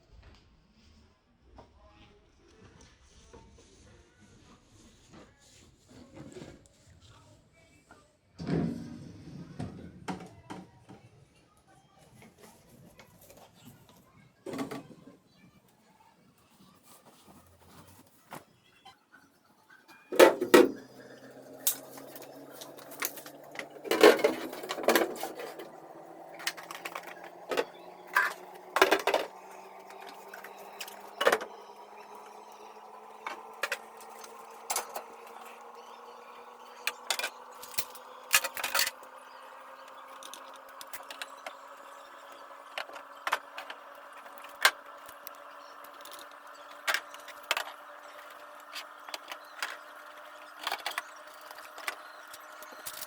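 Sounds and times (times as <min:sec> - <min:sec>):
objects clicking and knocking: 0:20.1 - 0:35.8, 0:36.8 - 0:53.0.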